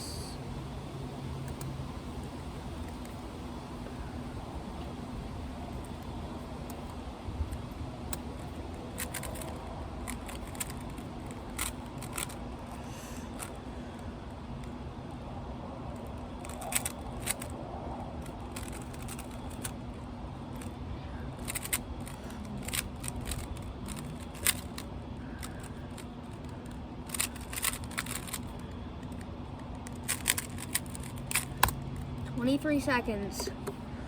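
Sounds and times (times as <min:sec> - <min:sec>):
rubik's cube plastic clicks: 0:05.8 - 0:14.8, 0:15.9 - 0:17.6, 0:18.2 - 0:32.1.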